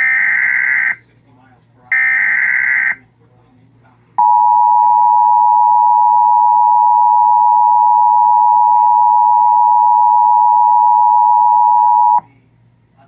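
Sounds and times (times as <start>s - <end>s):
two-tone alert signal: 4.2s - 12.2s.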